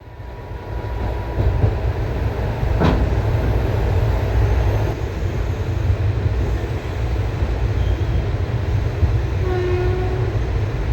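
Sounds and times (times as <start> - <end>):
train rumbling: 0.0 - 10.9.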